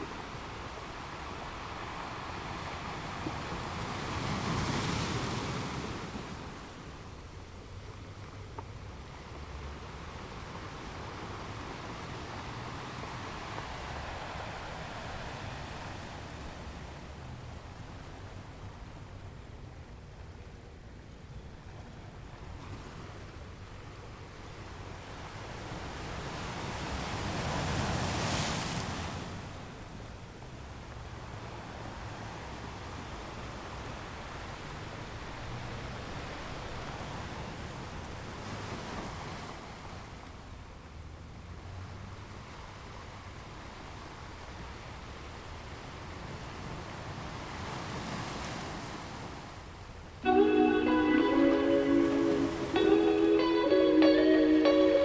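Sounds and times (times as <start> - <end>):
sea water rushing along boat: 0.0 - 19.5.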